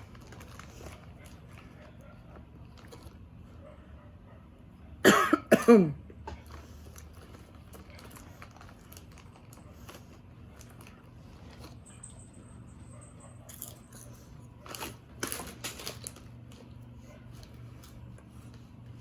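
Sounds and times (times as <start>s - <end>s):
wrapper crinkling: 0.0s - 1.8s, 6.5s - 11.8s, 13.5s - 16.8s
steady low hum: 0.0s - 19.0s.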